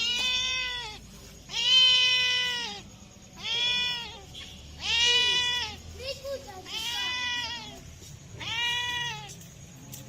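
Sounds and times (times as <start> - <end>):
cat meowing: 0.0 - 5.8, 6.6 - 7.8, 8.4 - 9.4.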